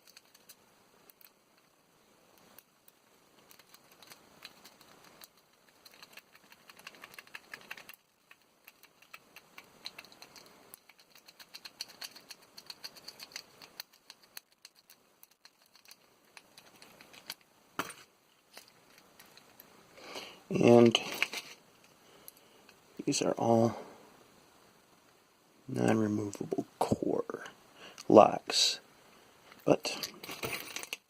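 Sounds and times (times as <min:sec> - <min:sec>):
lock pick clicking and scraping: 0:08.6 - 0:17.4.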